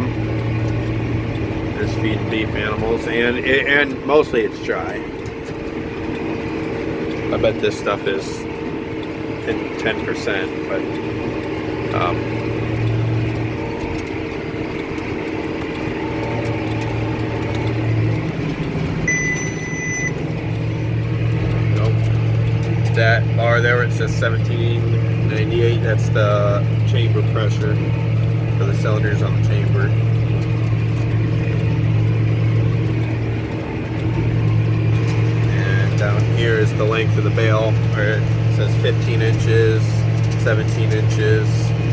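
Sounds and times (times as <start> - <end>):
baler pulsing hum: 0.0 - 41.9
tractor engine running: 0.0 - 41.9
electronic beep: 19.0 - 20.2.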